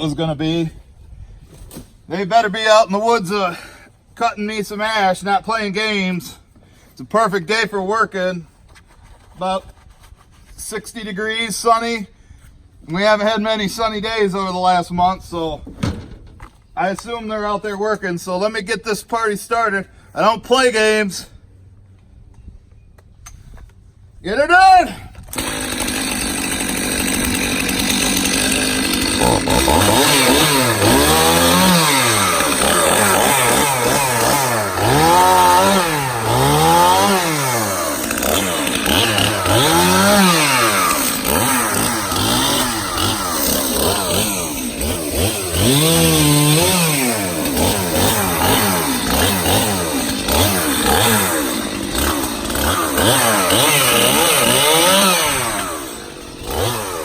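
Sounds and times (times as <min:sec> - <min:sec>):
chainsaw cutting wood: 0:25.2 - 0:57.0.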